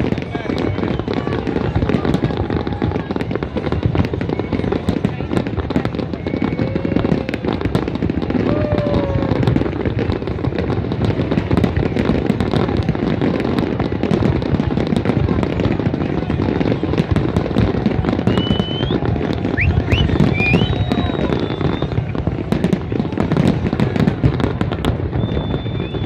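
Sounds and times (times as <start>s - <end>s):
fireworks bangs and crackles: 0.0s - 26.0s
rising firework whistles: 17.6s - 22.7s, 24.8s - 26.0s.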